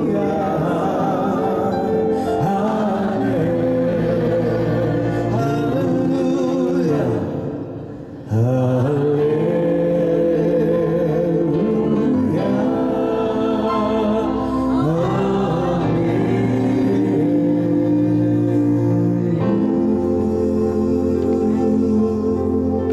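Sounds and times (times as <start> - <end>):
slow singing: 0.0 - 22.9
sustained instrumental backing: 0.0 - 22.9.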